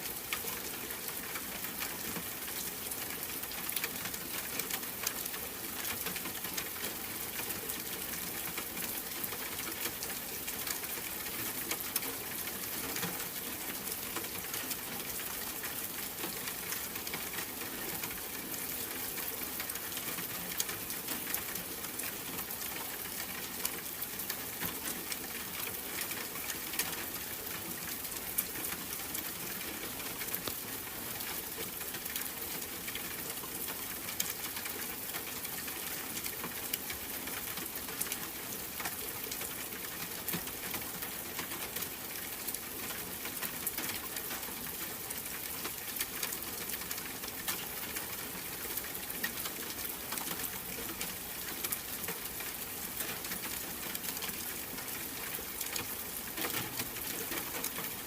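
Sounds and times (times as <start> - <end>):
steady rain pattering: 0.0 - 58.0.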